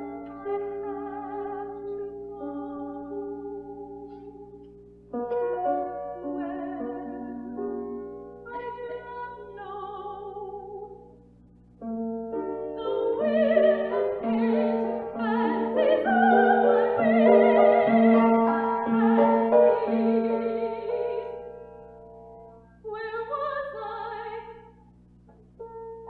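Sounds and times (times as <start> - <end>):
woman singing with vibrato: 0.0 - 3.7, 5.7 - 7.8, 8.4 - 11.0, 12.6 - 21.5, 22.9 - 24.8
piano chords: 0.0 - 26.0.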